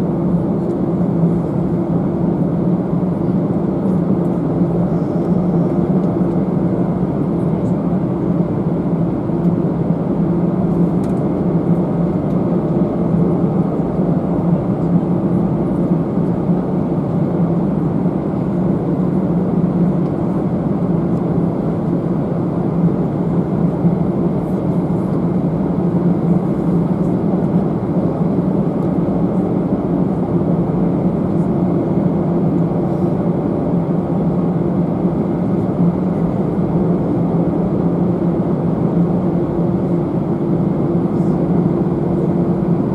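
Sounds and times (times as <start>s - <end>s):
aircraft engines droning: 0.0s - 42.9s.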